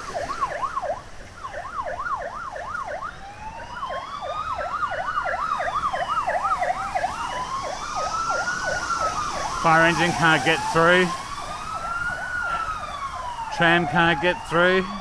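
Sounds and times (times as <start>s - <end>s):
siren fast yelp: 0.0s - 15.0s
siren slow wail: 0.0s - 15.0s.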